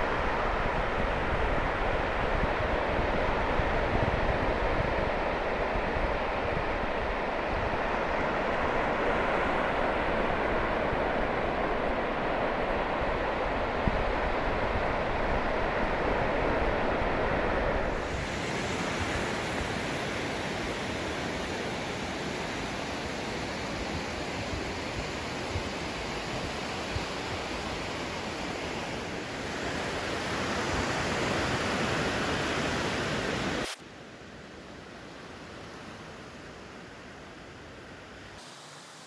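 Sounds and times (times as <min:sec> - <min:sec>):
ocean surf: 0:00.0 - 0:19.2.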